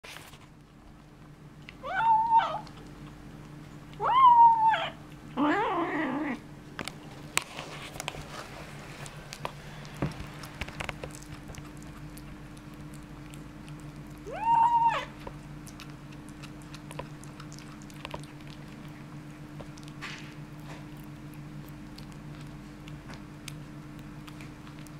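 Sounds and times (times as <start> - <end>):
chewing clicks: 1.6 - 4.0, 5.0 - 5.4, 8.9 - 24.9
kitten yowling: 1.8 - 2.7, 4.0 - 6.4, 14.2 - 15.2
kitten growling: 1.8 - 2.8, 4.0 - 6.4, 13.9 - 15.2.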